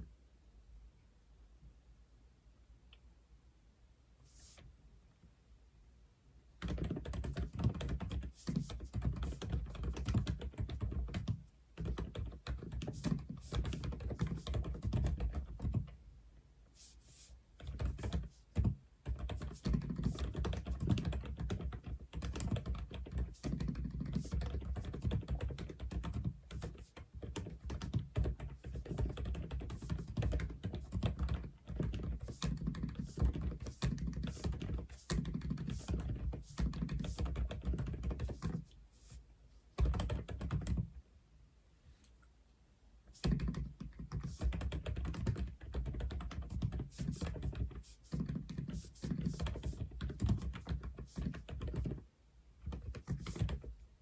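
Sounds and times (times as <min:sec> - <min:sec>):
typing on mechanical keyboard: 0:06.6 - 0:15.9, 0:17.6 - 0:38.6, 0:39.8 - 0:40.9, 0:43.2 - 0:52.0, 0:52.6 - 0:53.7.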